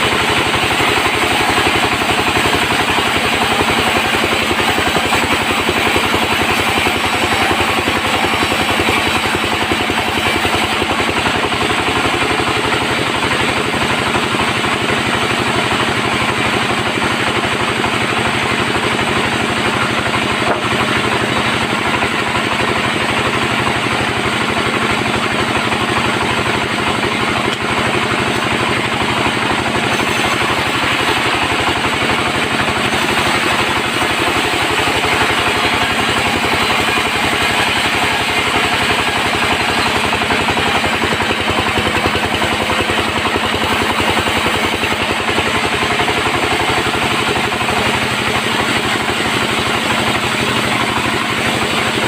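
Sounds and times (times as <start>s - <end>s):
bandsaw cutting timber: 0.0s - 52.0s.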